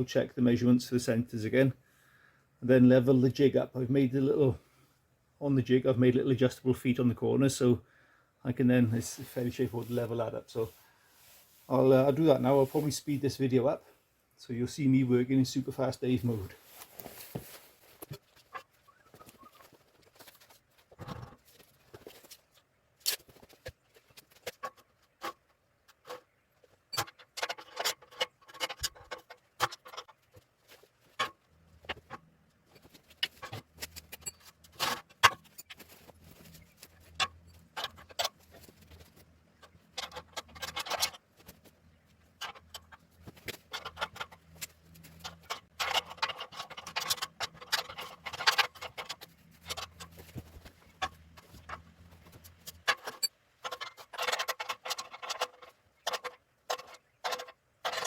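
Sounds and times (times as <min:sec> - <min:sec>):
hand tools clicking and clinking: 0:31.0 - 0:58.0.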